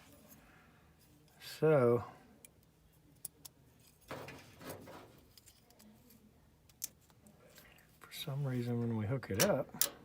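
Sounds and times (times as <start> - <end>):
handling rustles: 3.8 - 6.2.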